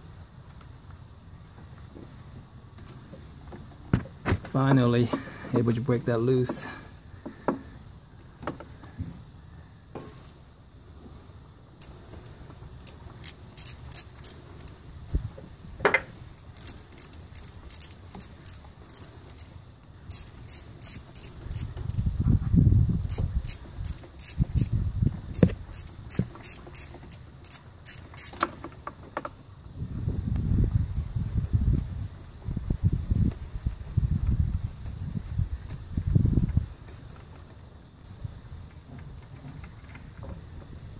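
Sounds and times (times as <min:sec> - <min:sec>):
socket ratchet clicking: 0:11.8 - 0:14.8, 0:16.6 - 0:22.1, 0:23.0 - 0:28.6.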